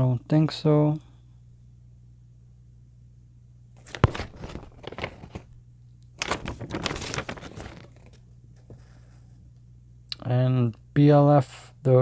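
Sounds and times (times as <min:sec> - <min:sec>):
paper rustling and crinkling: 0:03.8 - 0:05.6, 0:06.2 - 0:09.4.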